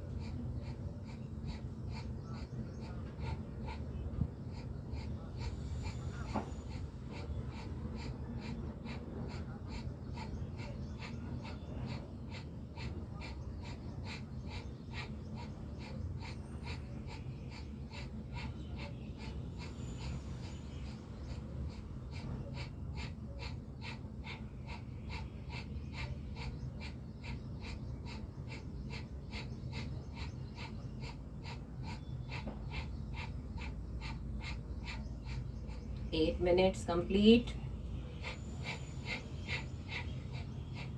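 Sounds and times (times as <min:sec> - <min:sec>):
forceful rapid nose breathing: 0:00.0 - 0:40.9
steady low hum: 0:00.0 - 0:40.9.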